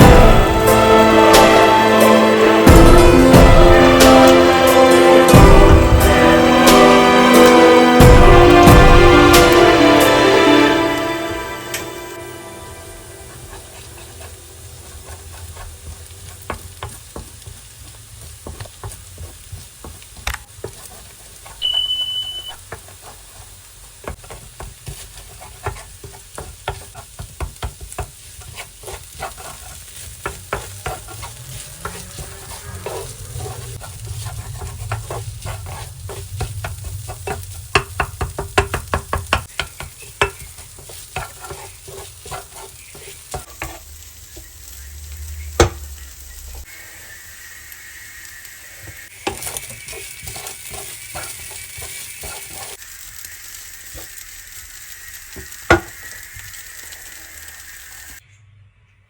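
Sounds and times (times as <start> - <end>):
food sizzling in a pan: 0.0 - 58.2
spatula scraping a pan: 12.8 - 44.5, 48.8 - 57.5
short high tone: 21.6 - 22.6.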